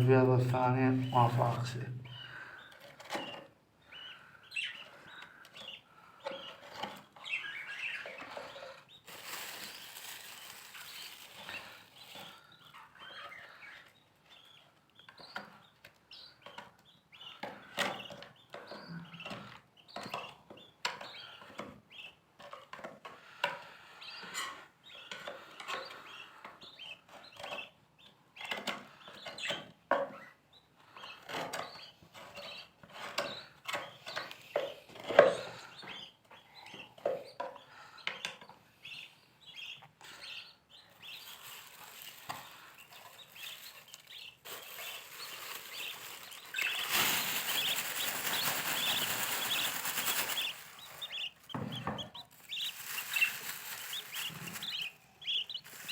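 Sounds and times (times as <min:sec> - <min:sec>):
lovebirds chirping: 0:00.0 - 0:22.6, 0:23.8 - 0:55.9
knocking and scraping: 0:51.5 - 0:52.4.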